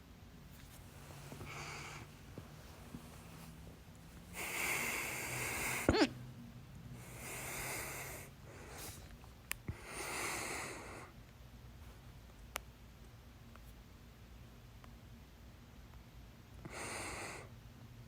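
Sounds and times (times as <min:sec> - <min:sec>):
person breathing: 0:00.8 - 0:06.0, 0:07.0 - 0:09.1, 0:09.7 - 0:11.2, 0:16.6 - 0:17.5
hiccup: 0:05.8 - 0:06.2.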